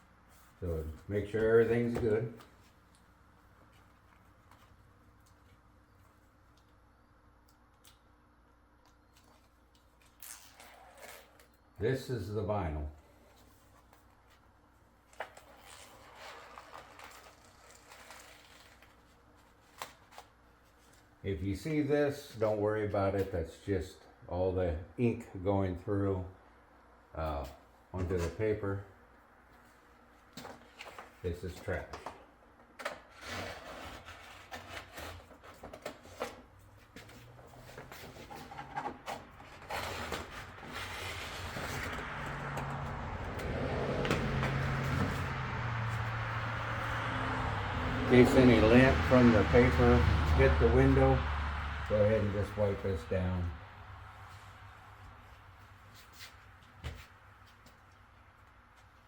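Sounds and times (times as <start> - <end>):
paper backing rustling and crinkling: 13.2 - 21.1.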